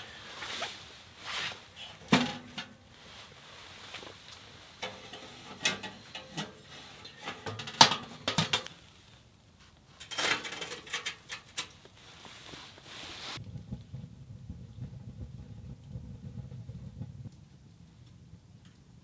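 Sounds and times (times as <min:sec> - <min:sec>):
low steady rumble: 0:13.4 - 0:19.0.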